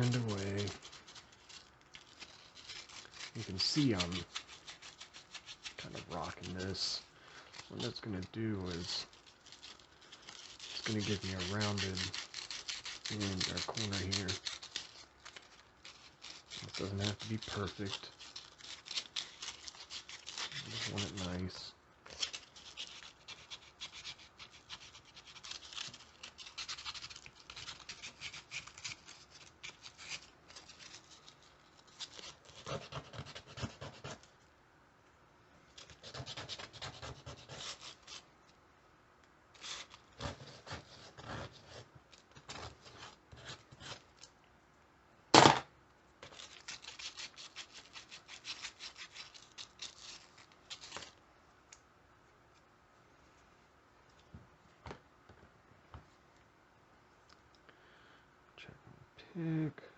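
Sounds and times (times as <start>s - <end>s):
sandpaper rasping on wood: 0.0s - 1.0s, 10.4s - 14.8s.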